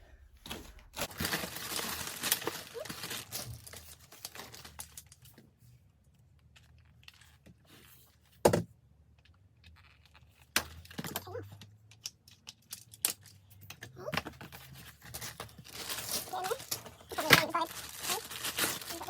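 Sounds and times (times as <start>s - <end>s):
plastic packaging crinkling: 0.4s - 5.4s, 14.4s - 19.0s.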